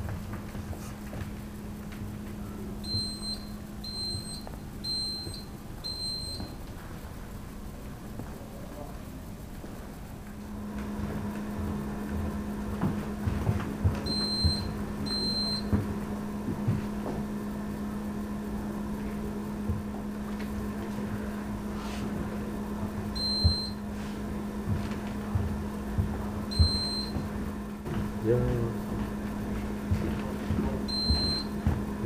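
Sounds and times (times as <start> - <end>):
steady low hum: 0.0 - 32.0
security gate beeps: 2.8 - 6.6, 14.1 - 15.7, 23.2 - 23.8, 26.5 - 27.2, 30.9 - 31.6.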